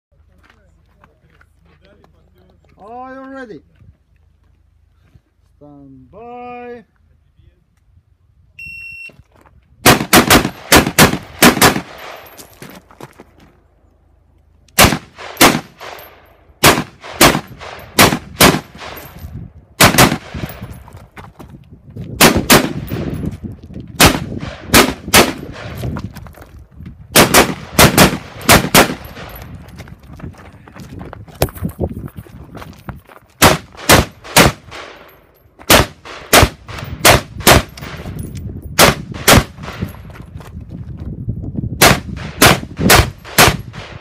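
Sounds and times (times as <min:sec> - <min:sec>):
rifle shots with echo: 0:09.8 - 0:12.3, 0:14.8 - 0:19.2, 0:19.8 - 0:20.7, 0:22.2 - 0:23.2, 0:24.0 - 0:25.8, 0:27.1 - 0:29.5, 0:33.4 - 0:38.2, 0:38.8 - 0:39.9, 0:41.8 - 0:44.0.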